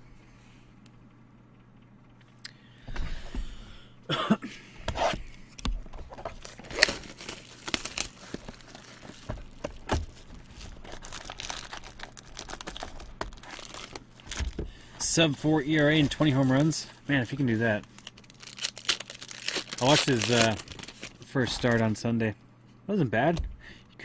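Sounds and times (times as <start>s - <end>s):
cards and packaging rustling: 5.8s - 22.0s
foil wrapper tearing and crinkling: 6.2s - 14.6s, 15.8s - 21.8s.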